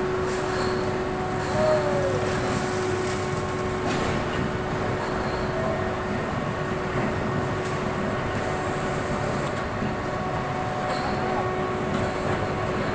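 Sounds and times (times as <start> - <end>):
steady hum: 0.0 - 4.9
industrial machine drone: 0.0 - 12.9.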